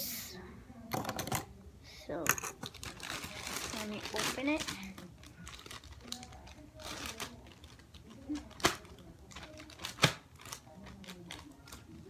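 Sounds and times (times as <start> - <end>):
plastic bag rustling: 2.6 - 12.0.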